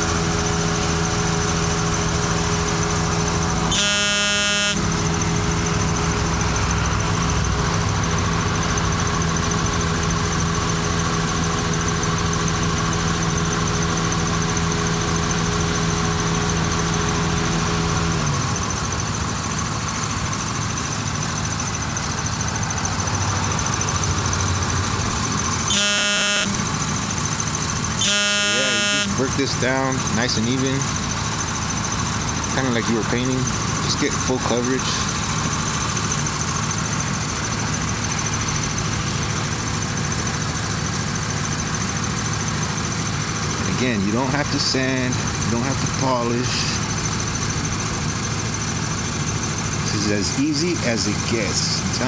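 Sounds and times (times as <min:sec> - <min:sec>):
horn sounding: 0:03.6 - 0:05.3, 0:25.2 - 0:27.1, 0:27.9 - 0:30.3.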